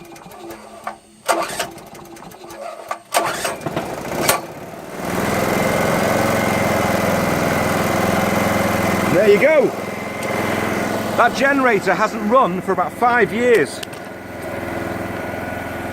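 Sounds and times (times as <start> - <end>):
recoil cord pulls: 0.0 - 4.5
small generator engine running: 0.0 - 15.9.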